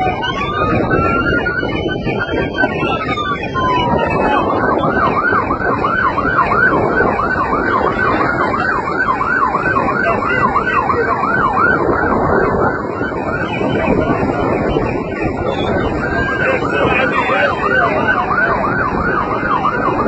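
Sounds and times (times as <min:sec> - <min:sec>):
electronic siren yelping: 0:00.0 - 0:20.0.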